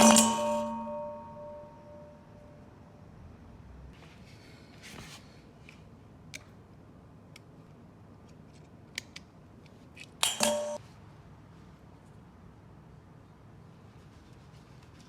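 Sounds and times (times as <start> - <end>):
loud ringing metal clinks: 0.0 - 2.4, 10.2 - 10.8.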